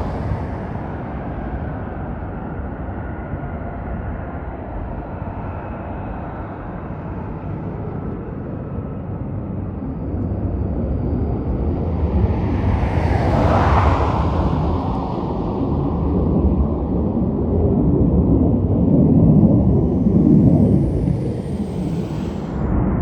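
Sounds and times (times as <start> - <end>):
jet engines rumbling: 0.0 - 2.5, 9.8 - 23.0
high jet engine whine: 0.0 - 23.0.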